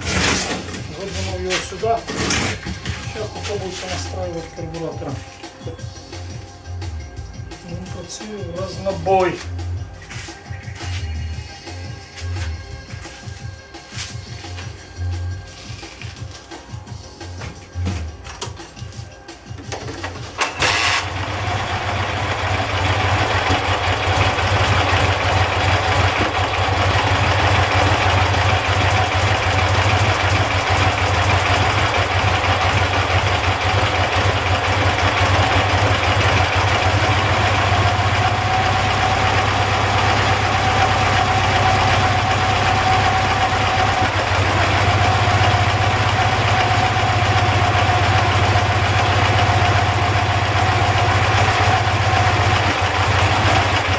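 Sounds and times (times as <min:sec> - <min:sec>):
motorcycle engine idling: 0:18.0 - 0:53.9.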